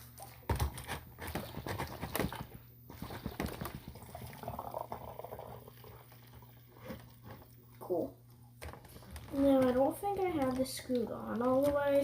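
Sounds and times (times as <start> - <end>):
water gurgling between bottles: 1.4 - 8.0.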